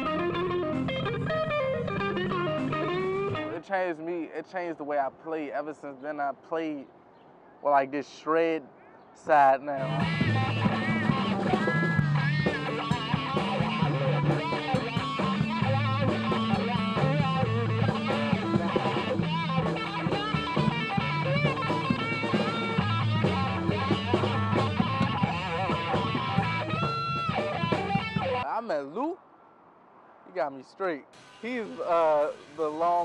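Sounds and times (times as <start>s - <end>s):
bass line: 0.0s - 3.6s, 9.7s - 28.5s
electric guitar blues lead: 0.0s - 3.6s, 9.8s - 28.4s.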